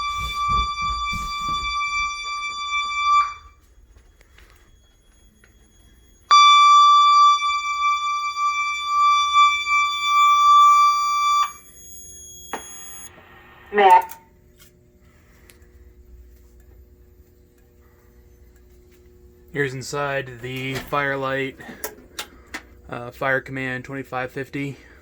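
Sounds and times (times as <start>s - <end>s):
fire alarm high alert tone: 0.0s - 14.4s
low hum: 0.0s - 25.0s.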